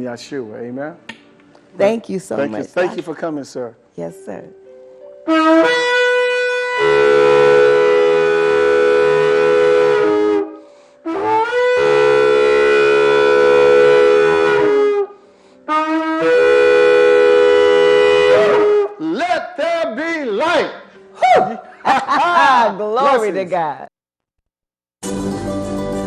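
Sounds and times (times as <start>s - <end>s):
shofar blasts: 5.2s - 19.8s.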